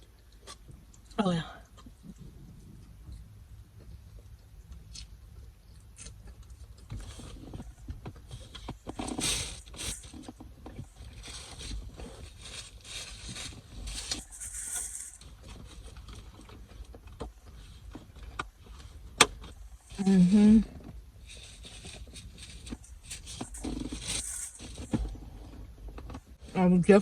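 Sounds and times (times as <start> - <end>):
chewing food: 0.0 - 9.1
rustling food container: 3.8 - 26.6.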